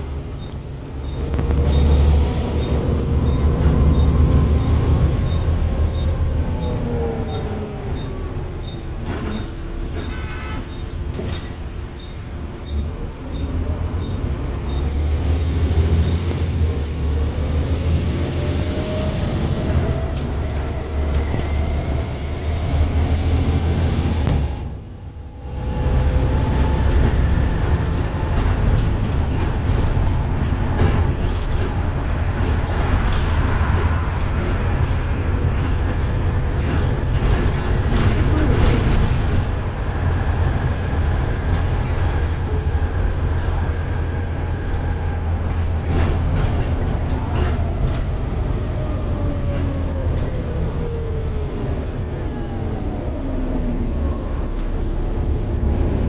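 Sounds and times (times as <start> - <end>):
bus engine rumble: 0.0 - 56.0
transmission whine: 0.4 - 8.2.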